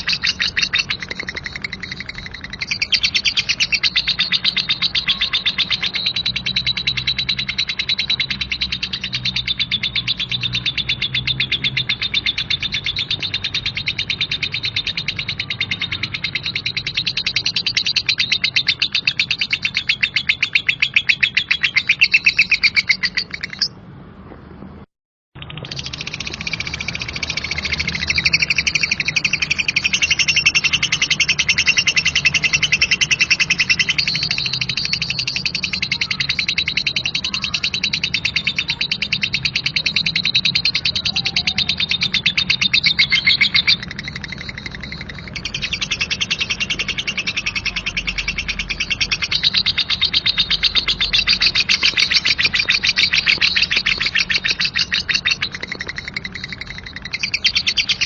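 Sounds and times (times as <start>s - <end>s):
bird rattling chatter: 0.0s - 8.3s, 42.9s - 58.0s.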